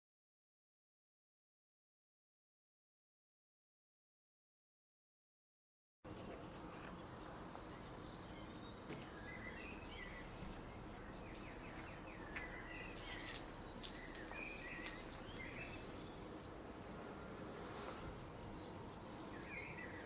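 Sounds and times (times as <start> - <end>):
low outdoor background noise: 6.1 - 20.0
small birds chirping: 6.1 - 20.0.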